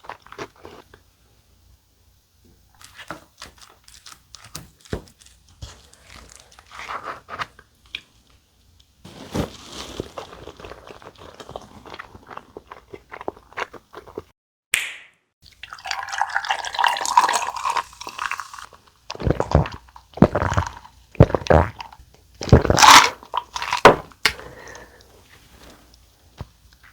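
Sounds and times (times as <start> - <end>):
wet crackling chewing: 10.2 - 14.3.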